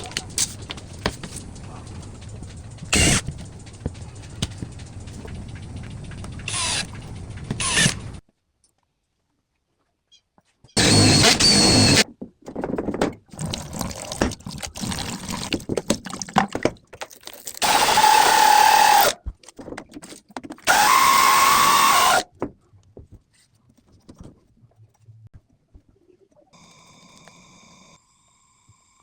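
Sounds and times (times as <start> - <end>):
power drill whine: 2.9 - 3.4, 6.4 - 8.2, 10.8 - 12.0, 17.6 - 19.2, 20.7 - 22.2.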